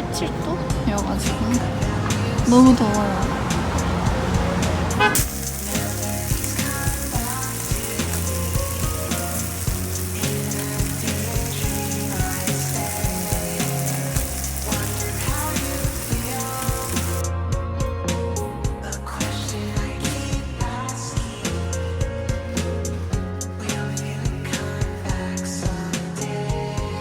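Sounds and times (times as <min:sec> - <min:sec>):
food sizzling in a frying pan: 0:05.2 - 0:17.2.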